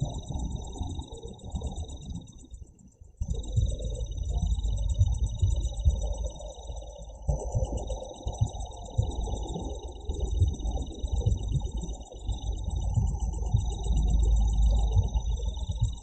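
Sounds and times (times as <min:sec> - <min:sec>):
insects trilling: 0:03.3 - 0:16.0
low rumble: 0:07.0 - 0:16.0.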